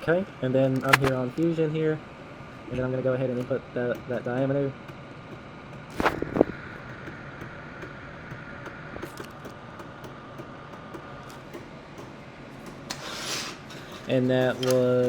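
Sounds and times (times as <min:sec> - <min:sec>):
machine hum with high whine: 0:00.0 - 0:15.0
mouse and keyboard clicks: 0:00.8 - 0:01.3.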